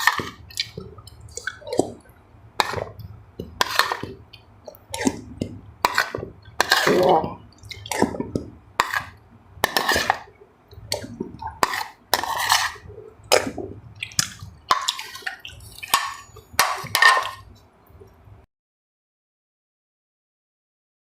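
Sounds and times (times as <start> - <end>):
slurping and chewing: 0.0 - 18.1
utensils clinking on bowls: 5.9 - 8.2, 11.0 - 17.5.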